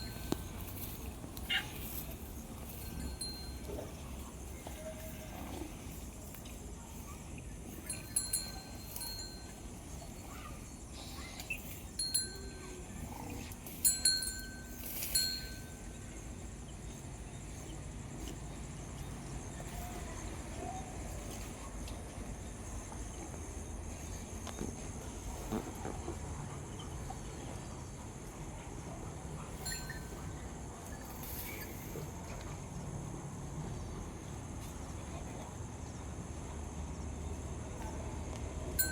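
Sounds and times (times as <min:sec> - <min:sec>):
cowbell clinking: 0:00.0 - 0:01.0, 0:02.6 - 0:04.3, 0:07.8 - 0:09.9, 0:12.0 - 0:16.0, 0:29.6 - 0:30.4.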